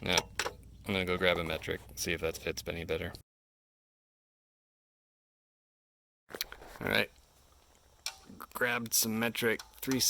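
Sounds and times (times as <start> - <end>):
person speaking: 0.0 - 3.2, 6.4 - 7.2, 8.2 - 10.0.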